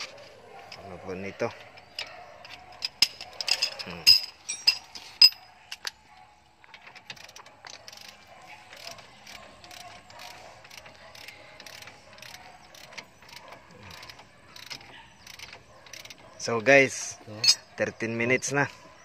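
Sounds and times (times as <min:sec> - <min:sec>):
sharp metal clinks: 0:02.0 - 0:06.0, 0:17.3 - 0:17.8
ratchet wrench clicking: 0:07.1 - 0:16.2.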